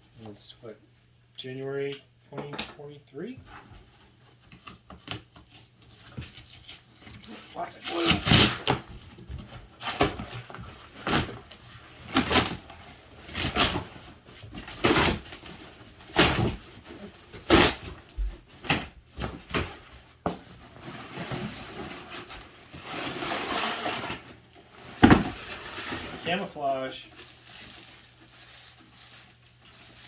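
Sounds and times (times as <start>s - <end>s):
cardboard box tearing: 7.8s - 8.8s
packaging rustling: 24.6s - 30.0s.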